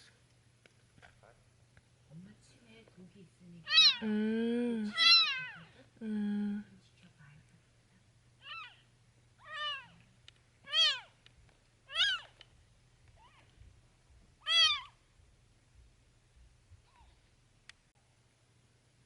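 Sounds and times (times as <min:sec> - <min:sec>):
cat meowing: 0:03.7 - 0:04.1, 0:04.9 - 0:05.7, 0:08.4 - 0:08.8, 0:09.4 - 0:10.0, 0:10.6 - 0:11.2, 0:11.9 - 0:12.4, 0:14.4 - 0:15.0.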